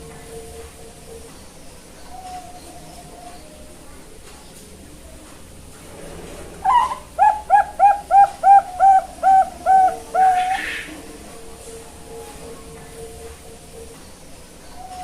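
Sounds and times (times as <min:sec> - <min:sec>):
dove cooing: 0:02.0 - 0:03.8, 0:06.5 - 0:12.8, 0:14.6 - 0:15.0.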